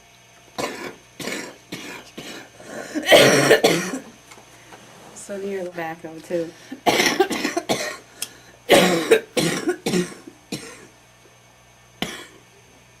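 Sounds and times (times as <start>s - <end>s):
person coughing wetly: 0.6s - 4.1s, 6.8s - 8.1s, 8.7s - 10.9s, 12.0s - 12.4s.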